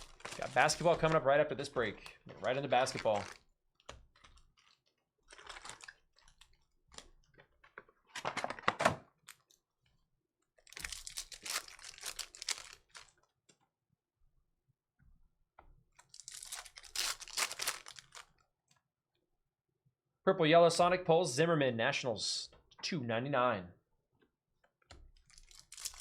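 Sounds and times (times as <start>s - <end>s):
foil wrappers tearing and crinkling: 0.0s - 3.4s, 10.7s - 13.1s, 16.1s - 18.4s, 25.3s - 26.0s.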